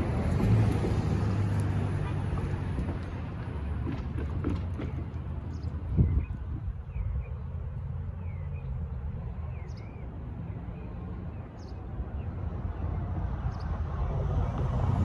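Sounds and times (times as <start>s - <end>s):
freight train rumbling past: 0.0s - 6.0s.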